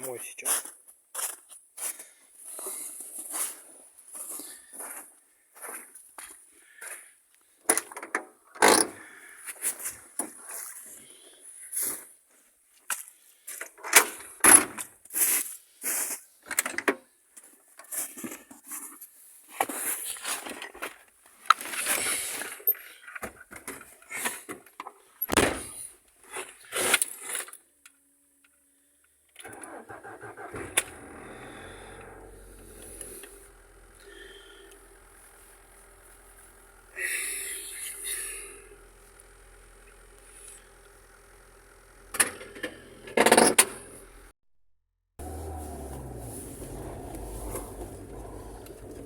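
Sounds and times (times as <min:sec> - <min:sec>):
car engine starting and idling: 0:29.4 - 0:44.3, 0:45.2 - 0:49.0.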